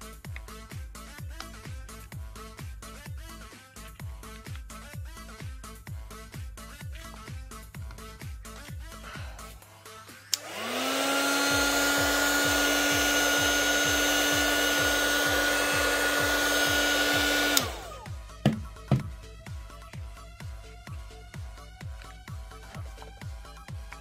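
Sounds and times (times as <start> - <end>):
heat gun switch click: 10.3 - 10.9
heat gun fan whine: 10.3 - 18.1.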